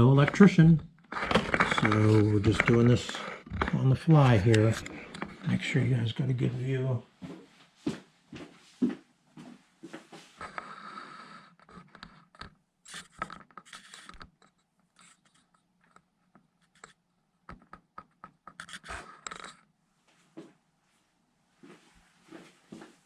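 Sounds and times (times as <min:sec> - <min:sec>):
scratching and scraping: 0:00.0 - 0:06.7, 0:10.4 - 0:19.7.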